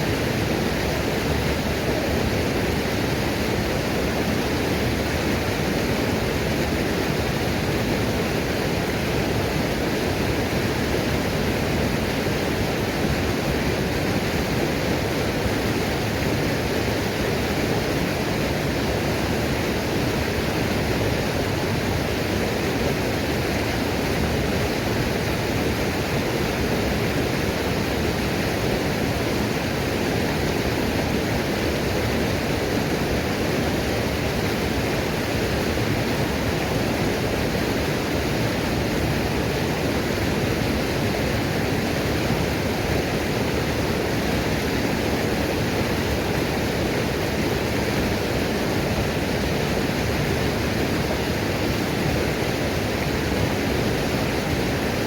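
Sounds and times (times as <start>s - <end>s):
waterfall pouring and splashing: 0.0s - 55.0s.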